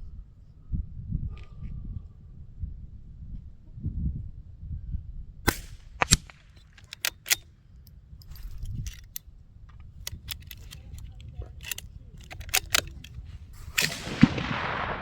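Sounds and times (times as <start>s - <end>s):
low wind rumble on microphone: 0.0s - 6.3s
light metallic clicks: 5.5s - 14.2s
gunshots: 13.7s - 15.0s.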